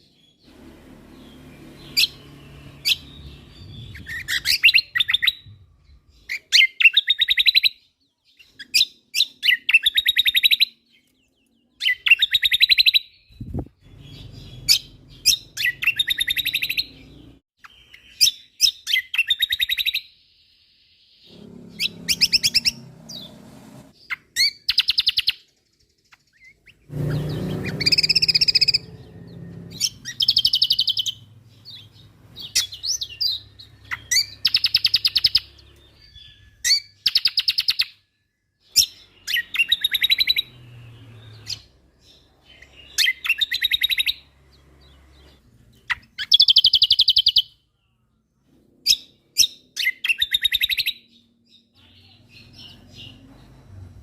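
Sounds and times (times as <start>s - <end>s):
songbird singing rattling bursts: 0.0s - 7.8s, 11.8s - 17.4s, 21.2s - 38.0s, 38.6s - 47.6s
low rumble: 27.2s - 30.4s.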